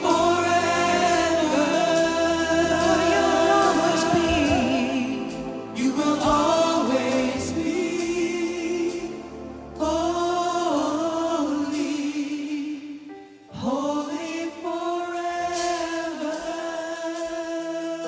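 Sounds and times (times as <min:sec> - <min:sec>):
people singing long notes: 0:00.0 - 0:12.6
worship band playing: 0:00.0 - 0:18.0.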